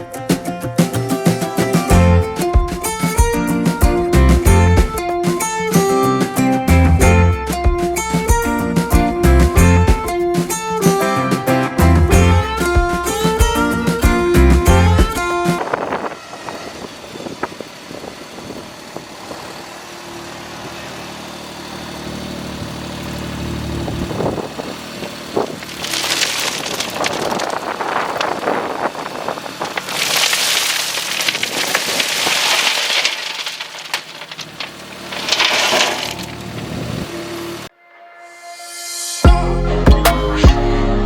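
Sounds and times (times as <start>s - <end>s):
engine running: 1.0s - 37.7s
loose rock pouring and rattling: 25.2s - 37.1s.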